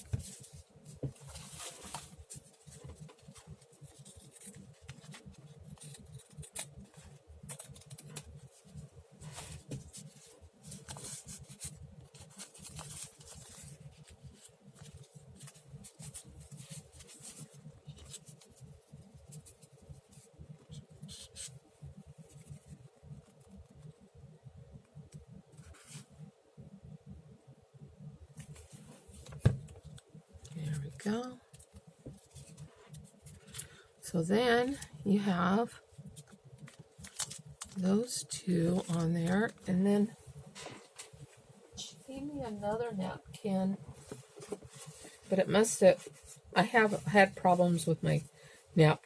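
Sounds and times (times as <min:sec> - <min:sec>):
paper rustling: 0:00.0 - 0:21.6, 0:36.1 - 0:37.8.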